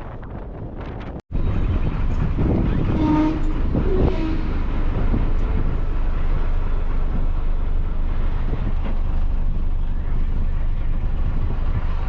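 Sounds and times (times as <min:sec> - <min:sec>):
bus engine and road rumble: 0:00.0 - 0:12.0.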